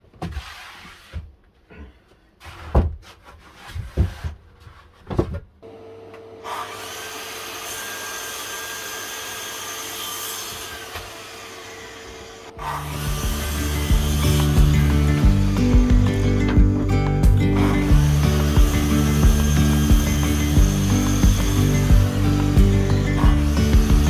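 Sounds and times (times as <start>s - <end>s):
electric power tool humming: 10.6s - 24.0s.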